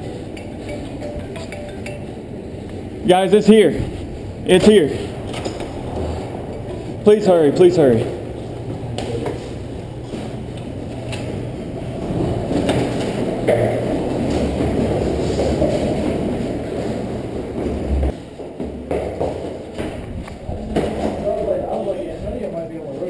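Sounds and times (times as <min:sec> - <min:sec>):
tornado wind roaring: 0:03.8 - 0:09.0.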